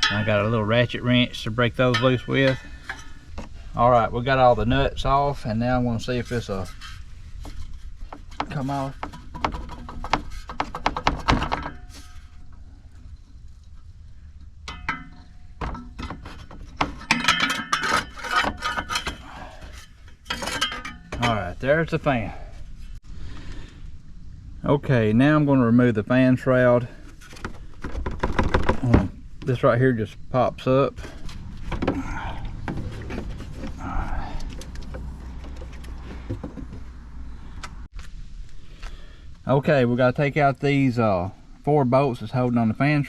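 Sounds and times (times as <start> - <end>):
fan scraping and clattering: 0.0 - 23.0, 26.5 - 29.6, 30.6 - 37.1
metal knocks: 1.7 - 3.6, 6.6 - 12.6, 14.4 - 21.4.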